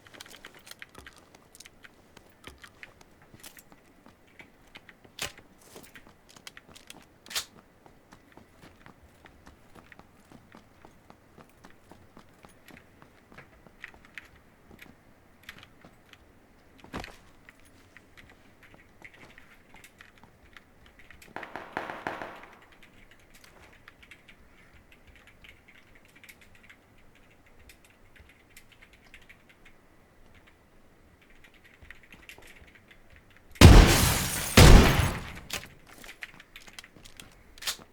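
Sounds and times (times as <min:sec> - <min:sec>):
light clicks and rustling: 0:00.0 - 0:21.3, 0:23.1 - 0:33.5, 0:35.1 - 0:37.9
loud sharp bangs: 0:21.4 - 0:22.8, 0:33.6 - 0:35.7.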